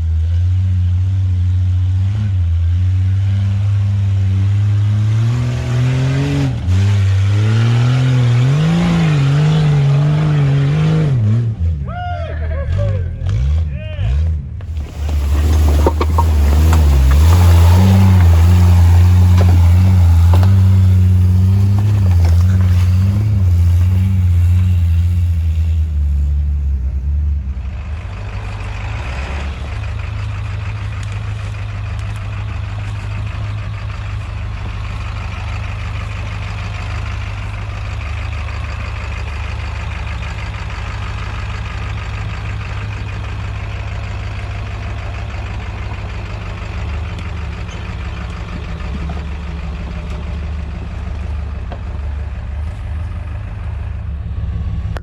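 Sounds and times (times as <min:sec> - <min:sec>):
diesel engine running: 0:14.4 - 0:55.0.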